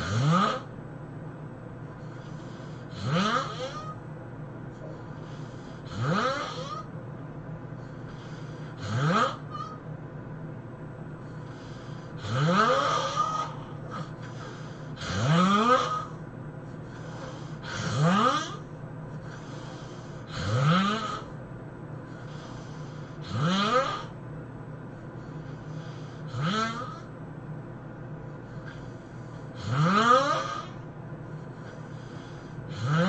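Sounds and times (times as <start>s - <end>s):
person snoring heavily: 0.0s - 0.7s, 2.1s - 4.0s, 4.9s - 6.9s, 7.9s - 9.8s, 11.3s - 16.2s, 16.8s - 21.4s, 22.2s - 24.2s, 25.4s - 27.1s, 28.6s - 30.8s, 31.5s - 33.0s
soft breathing: 1.8s - 3.0s, 4.6s - 6.0s, 7.5s - 8.8s, 11.0s - 12.3s, 13.4s - 15.2s, 15.9s - 20.5s, 21.2s - 23.3s, 24.8s - 26.4s, 28.0s - 29.6s, 30.6s - 32.9s.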